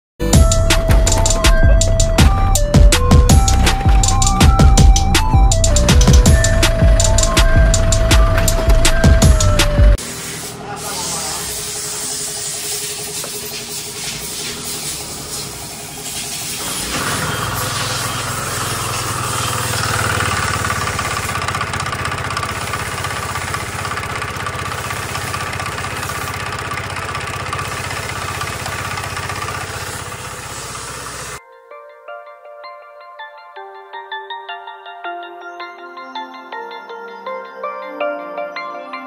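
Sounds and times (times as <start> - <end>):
scooter engine starting and idling: 0.3 - 31.4.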